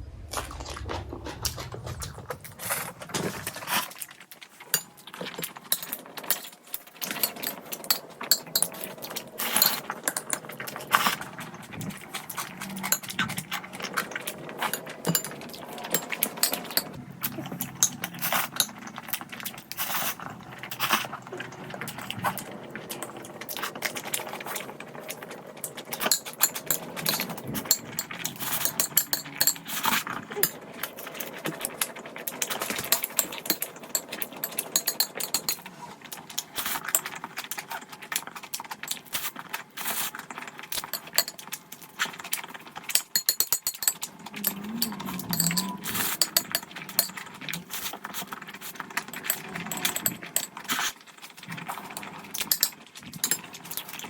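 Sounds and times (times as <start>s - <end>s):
wet chewing and smacking: 0.1s - 7.1s
utensils clicking and clinking: 1.5s - 54.0s.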